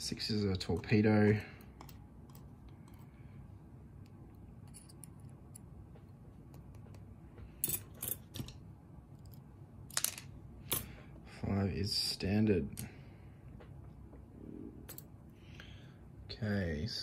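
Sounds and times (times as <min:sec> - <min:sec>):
faint low hum: 0:00.0 - 0:17.0
metal pins clicking and clinking: 0:01.6 - 0:03.1, 0:04.0 - 0:05.7, 0:07.6 - 0:11.0.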